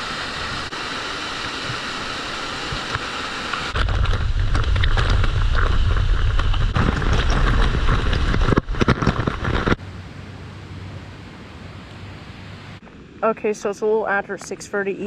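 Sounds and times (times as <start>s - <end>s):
waterfall rushing: 0.0s - 3.9s
low rumbling with knocks: 3.8s - 9.8s.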